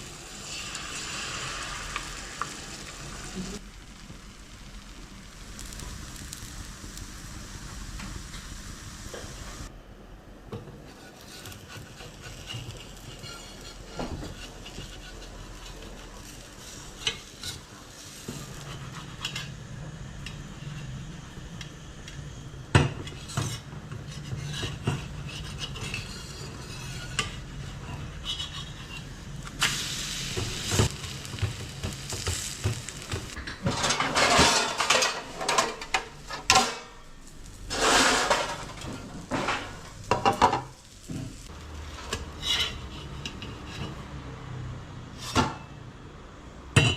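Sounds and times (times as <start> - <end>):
batter frying in oiled pan: 0.0 - 9.7, 10.6 - 45.8
spatula scraping pan: 10.9 - 19.6, 23.0 - 29.2, 37.7 - 40.4, 42.1 - 44.0.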